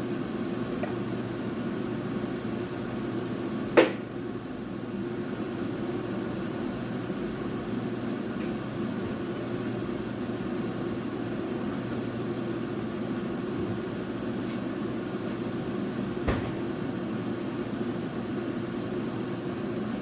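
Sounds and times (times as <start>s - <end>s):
steady machine hum: 0.0s - 20.0s.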